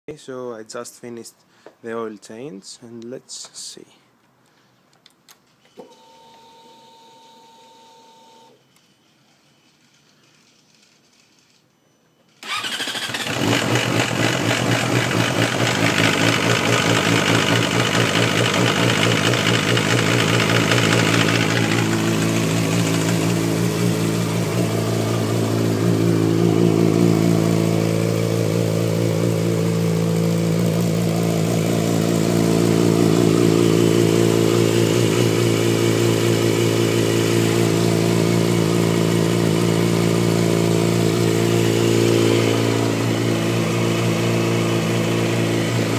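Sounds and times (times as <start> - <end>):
motorcycle engine idling: 13.1 - 45.9.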